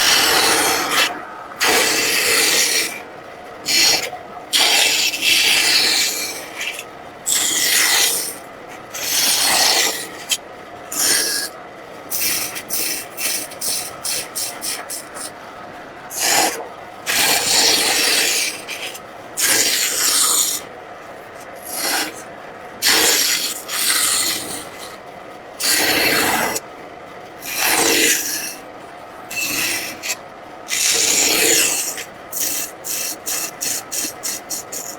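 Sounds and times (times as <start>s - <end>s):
hand tool scraping wood: 0.0s - 3.0s, 16.1s - 20.6s, 21.6s - 22.2s, 29.3s - 34.9s.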